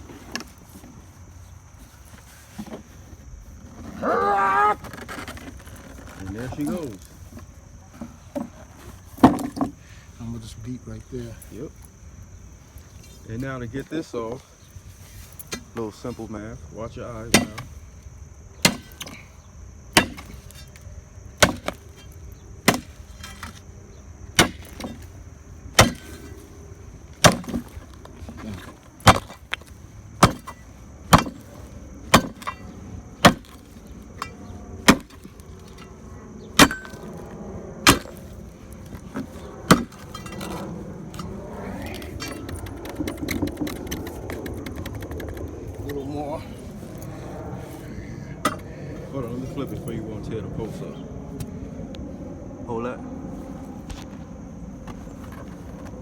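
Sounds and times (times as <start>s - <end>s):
hammer striking concrete: 30.2s - 31.4s.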